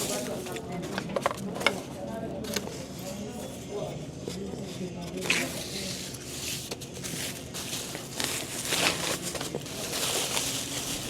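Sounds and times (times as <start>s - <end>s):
rustling and crackling: 5.2s - 11.0s.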